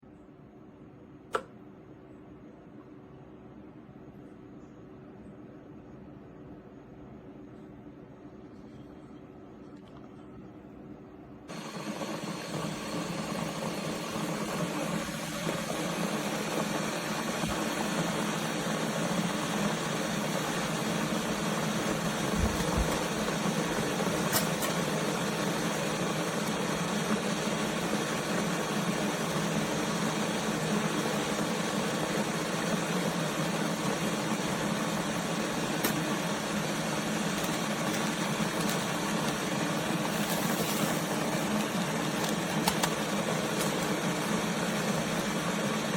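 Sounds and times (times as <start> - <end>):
electric kettle heating water: 1.3 - 1.8, 11.4 - 45.9.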